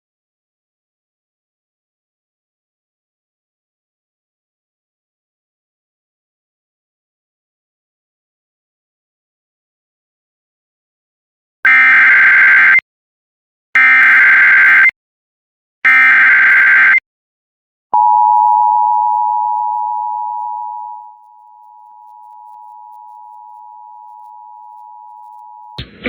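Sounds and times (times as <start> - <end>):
two-tone attention signal: 18.0 - 25.8
digital data tone bursts: 21.0 - 25.8.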